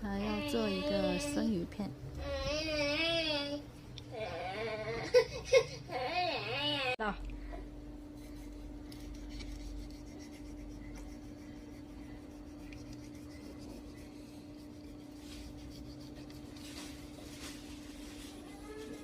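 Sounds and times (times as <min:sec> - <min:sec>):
low hum: 0:07.0 - 0:18.1.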